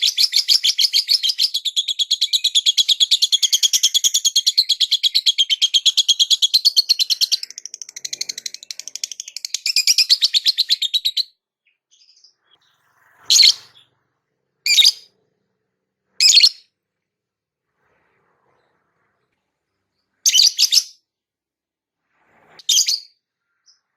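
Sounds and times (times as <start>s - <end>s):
harsh bird calls: 0.0s - 14.0s, 14.7s - 15.1s, 16.2s - 16.7s
lovebird chattering trill: 13.3s - 13.8s, 14.7s - 15.0s, 16.2s - 16.6s.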